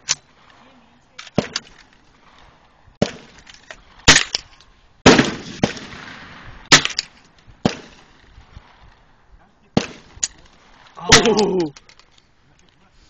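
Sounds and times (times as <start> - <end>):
gunshots outdoors: 1.1 - 11.7.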